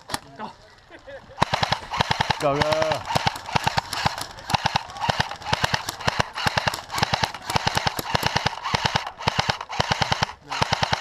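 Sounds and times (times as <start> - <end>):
airsoft rifle firing bursts: 1.4 - 11.0.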